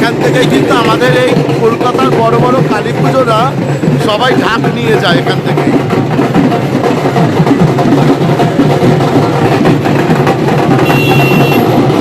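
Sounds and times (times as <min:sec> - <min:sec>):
barrel drum beaten with sticks: 0:00.0 - 0:12.0.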